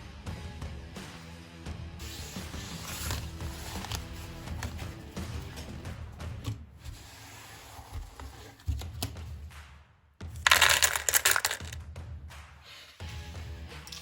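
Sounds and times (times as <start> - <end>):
quiet background music: 0.0 - 14.0
playing cards rustling: 2.0 - 9.4, 10.4 - 11.8.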